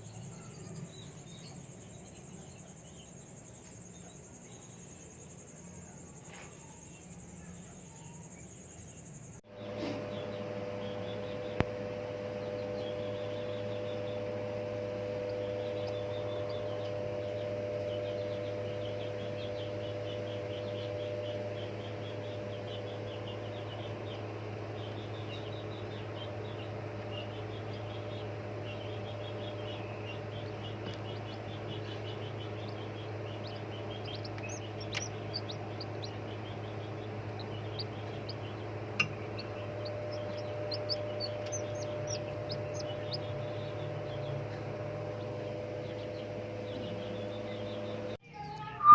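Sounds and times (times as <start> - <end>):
steady low hum: 0.0 - 48.9
parrots chirping and chattering: 15.3 - 48.6.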